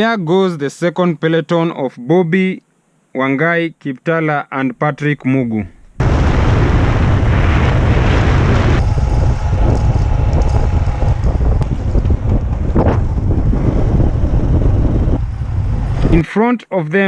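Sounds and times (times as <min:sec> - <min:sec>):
wind buffeting microphone: 0:06.0 - 0:16.2
vehicle running noise: 0:07.2 - 0:16.2.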